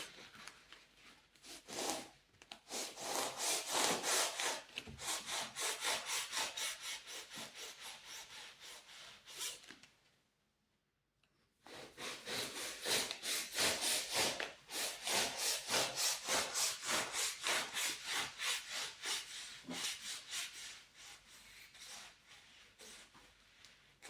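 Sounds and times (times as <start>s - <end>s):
hand saw cutting metal: 2.8s - 9.4s, 11.7s - 20.8s.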